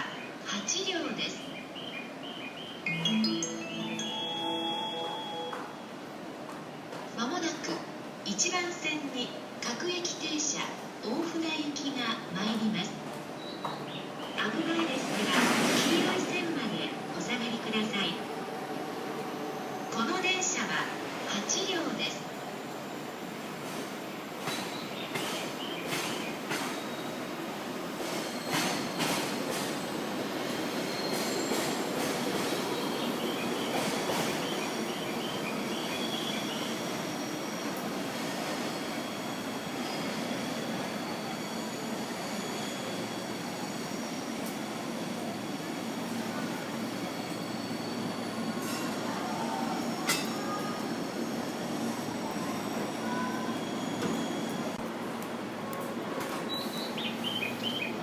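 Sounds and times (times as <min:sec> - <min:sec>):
electric train arriving: 0:01.3 - 0:58.0
wheel and brake squeal: 0:28.2 - 0:29.3, 0:30.8 - 0:31.7, 0:38.7 - 0:44.3, 0:47.0 - 0:49.1, 0:52.6 - 0:54.8.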